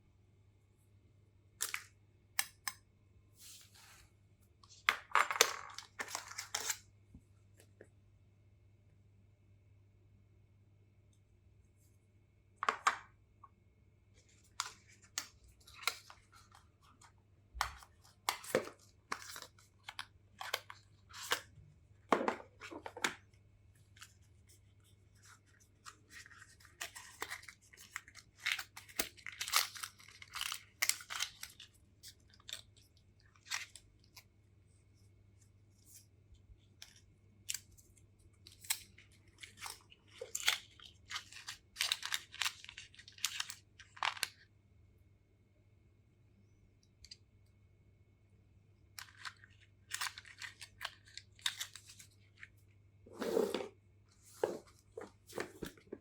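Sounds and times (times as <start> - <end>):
faint low hum: 0.0 - 56.0
packaging rustling and scraping: 53.1 - 56.0.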